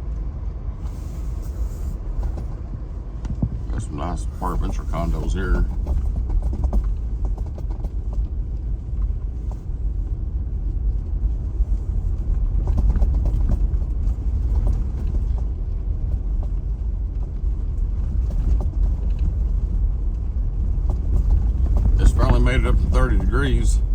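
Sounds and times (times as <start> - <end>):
road rumble inside car: 0.0 - 23.9
knocks and rattles: 3.2 - 8.3, 12.6 - 16.8, 20.6 - 23.9.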